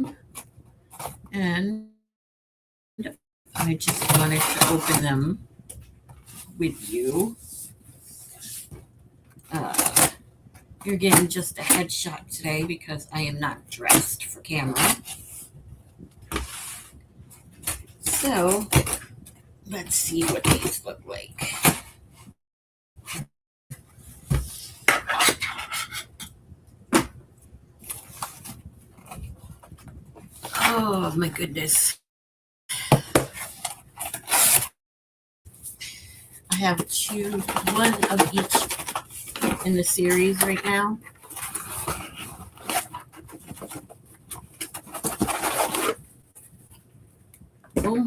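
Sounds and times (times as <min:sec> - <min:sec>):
books and packaging rustling: 0:00.1 - 0:01.3, 0:03.6 - 0:12.0, 0:13.9 - 0:22.4, 0:26.9 - 0:31.4, 0:32.9 - 0:34.8, 0:36.3 - 0:46.9
packaging scraping and rustling: 0:33.3 - 0:34.8, 0:36.8 - 0:46.6.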